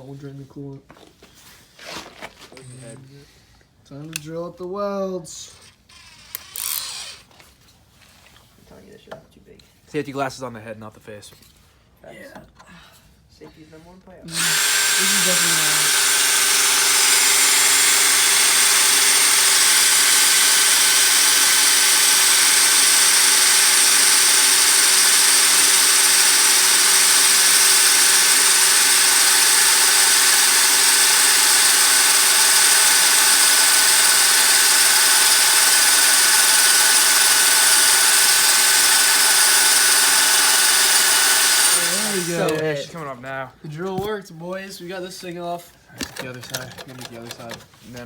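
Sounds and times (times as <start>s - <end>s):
power drill drilling sheet metal: 5.4s - 7.4s, 14.3s - 42.9s.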